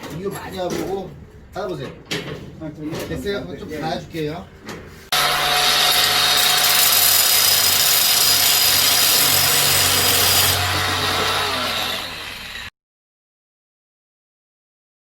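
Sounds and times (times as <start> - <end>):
angle grinder grinding steel: 5.1 - 12.7.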